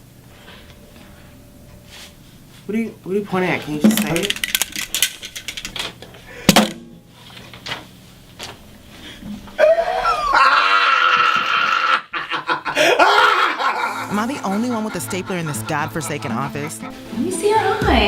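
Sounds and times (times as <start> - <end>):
loud high-pitched cry: 9.6 - 12.1.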